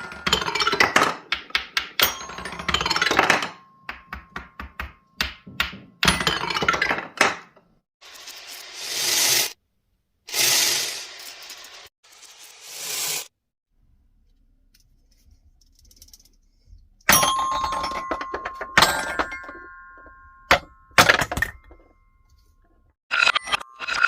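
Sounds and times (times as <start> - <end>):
balls hitting xylophone bars: 0.0 - 7.7, 17.1 - 22.5.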